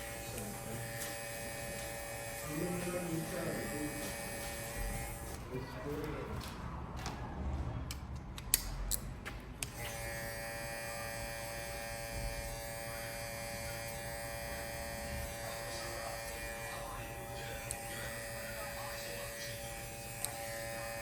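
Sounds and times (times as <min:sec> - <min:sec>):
hair clipper buzzing: 0:00.0 - 0:05.4, 0:09.7 - 0:21.0.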